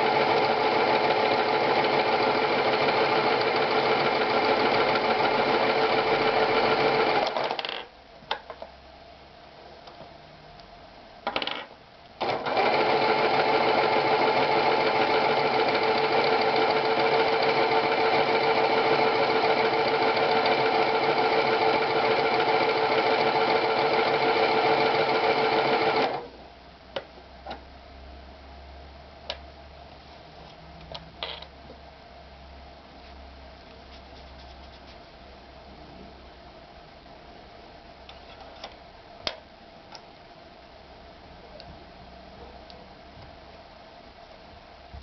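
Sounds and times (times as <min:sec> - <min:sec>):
sewing machine running: 0:00.0 - 0:07.4, 0:12.2 - 0:26.2.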